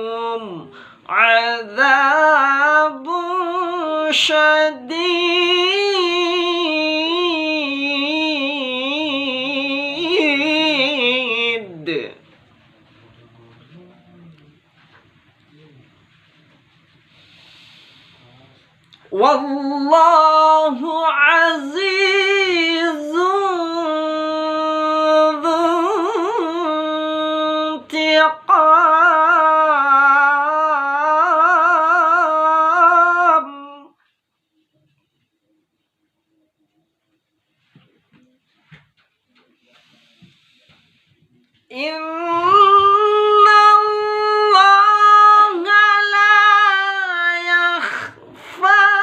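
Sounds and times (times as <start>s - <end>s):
person reciting melodically: 0.0s - 15.0s, 19.0s - 34.2s, 41.5s - 49.0s.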